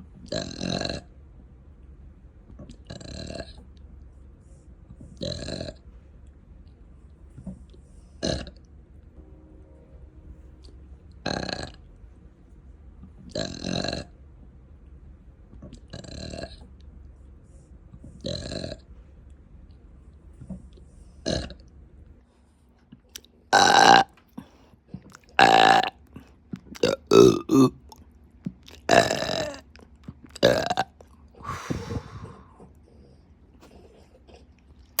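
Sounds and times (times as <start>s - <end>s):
person burping: 23.6s - 24.1s, 25.4s - 25.9s, 26.8s - 27.9s, 28.8s - 29.6s, 30.4s - 30.9s.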